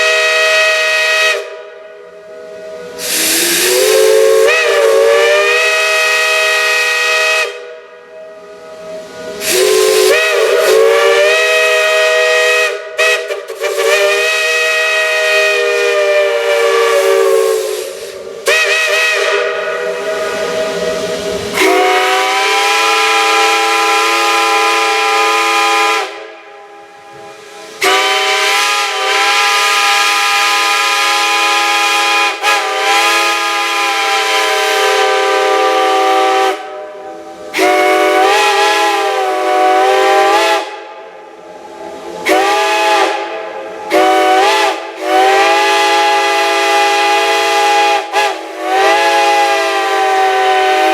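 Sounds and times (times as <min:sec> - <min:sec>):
chime steam whistle blasts: 0:00.0 - 0:50.9
steam hiss: 0:00.0 - 0:50.9.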